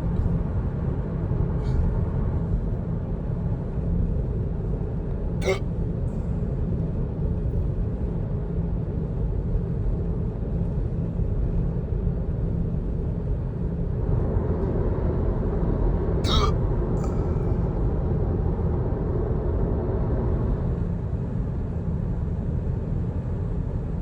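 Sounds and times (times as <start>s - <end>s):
man hiccuping: 5.4s - 5.6s, 16.2s - 17.4s.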